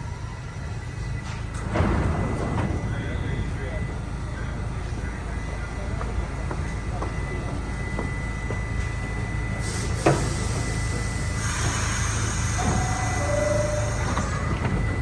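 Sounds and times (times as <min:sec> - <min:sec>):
low rumble in subway station: 0:00.0 - 0:15.0
train arriving hiss: 0:07.6 - 0:15.0.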